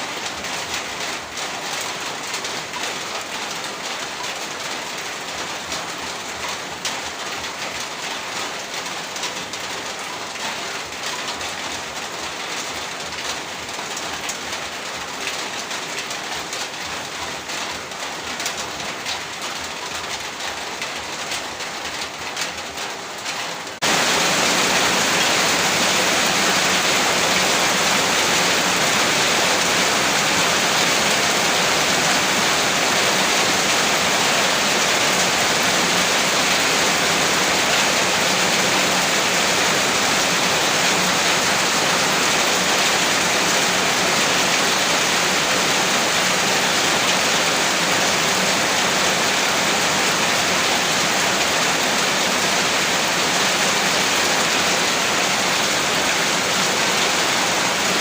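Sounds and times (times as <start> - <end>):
heavy rain hiss: 23.6 - 58.0.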